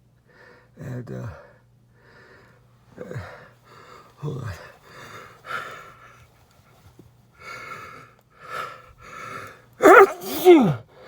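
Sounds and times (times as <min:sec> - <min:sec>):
man sneezing loudly: 0:09.8 - 0:10.9.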